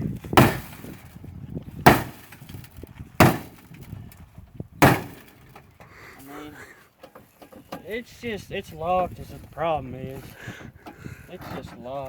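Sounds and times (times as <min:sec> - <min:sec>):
heavy bangs on car door: 0:00.4 - 0:01.0, 0:01.8 - 0:02.4, 0:03.2 - 0:03.6, 0:04.8 - 0:05.3.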